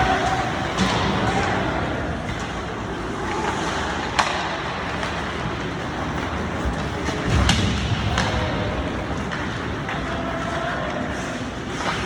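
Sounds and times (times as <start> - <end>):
skates scraping on ice: 2.2 - 12.0
hockey stick or puck clack: 3.3 - 5.7, 6.7 - 10.1.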